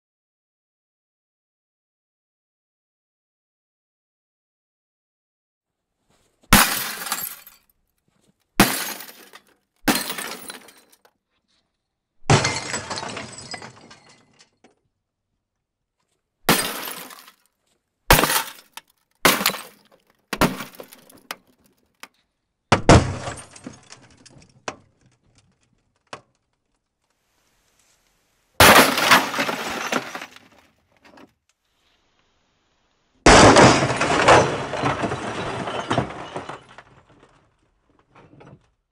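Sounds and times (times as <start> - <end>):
glass screen smashing: 6.5 - 7.6, 8.6 - 11.0, 12.3 - 14.4, 16.5 - 17.4, 18.1 - 21.4, 28.6 - 30.6, 33.3 - 37.0
glass shards tinkling: 6.6 - 7.6.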